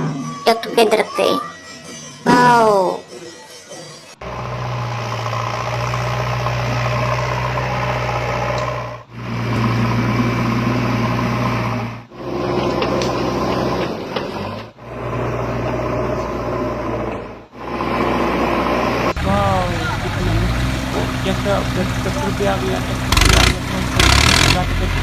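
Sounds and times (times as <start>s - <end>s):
engine idling with knock: 19.1s - 25.0s.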